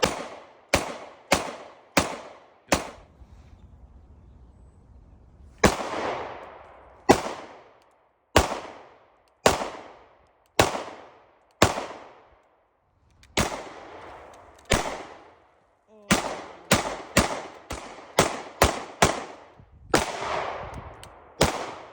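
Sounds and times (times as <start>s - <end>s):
gunshots with echo: 0.0s - 3.0s, 7.1s - 7.6s, 8.4s - 10.0s, 16.1s - 20.7s.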